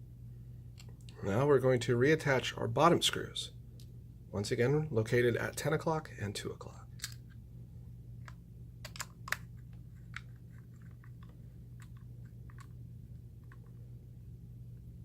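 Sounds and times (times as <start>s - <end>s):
screwdriver clicking in plastic case: 8.8s - 9.5s.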